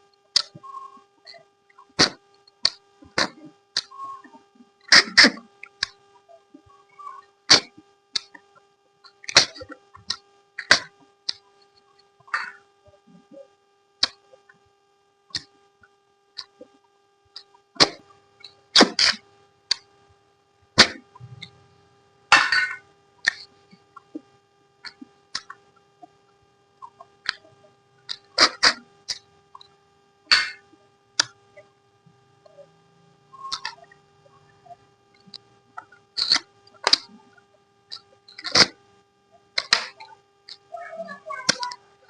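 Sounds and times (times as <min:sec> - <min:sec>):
faint steady hum: 0:00.0 - 0:42.0
mouth clicks and smacks: 0:14.0 - 0:14.5, 0:24.8 - 0:26.1, 0:26.8 - 0:31.7, 0:33.4 - 0:38.8, 0:39.6 - 0:40.7.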